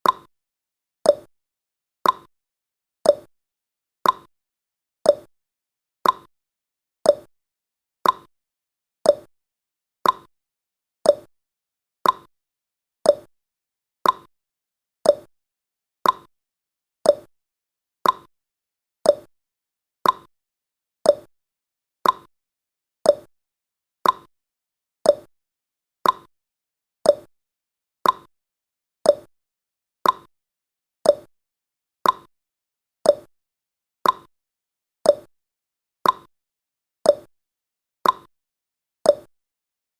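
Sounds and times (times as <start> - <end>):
timer ticking clicks: 0.0 - 0.3, 1.0 - 1.3, 2.0 - 2.3, 3.0 - 3.3, 4.0 - 4.3, 5.0 - 5.3, 6.0 - 6.3, 7.0 - 7.3, 8.0 - 8.3, 9.0 - 9.3, 10.0 - 10.3, 11.0 - 11.3, 12.0 - 12.3, 13.0 - 13.3, 14.0 - 14.3, 15.0 - 15.3, 16.0 - 16.3, 17.0 - 17.3, 18.0 - 18.3, 19.0 - 19.3, 20.0 - 20.3, 21.0 - 21.3, 22.0 - 22.3, 23.0 - 23.3, 24.0 - 24.3, 25.0 - 25.3, 26.0 - 26.3, 27.0 - 27.3, 28.0 - 28.3, 29.0 - 29.3, 30.0 - 30.3, 31.0 - 31.3, 32.0 - 32.3, 33.0 - 33.3, 34.0 - 34.3, 35.0 - 35.3, 36.0 - 36.3, 37.0 - 37.3, 38.0 - 38.3, 39.0 - 39.3.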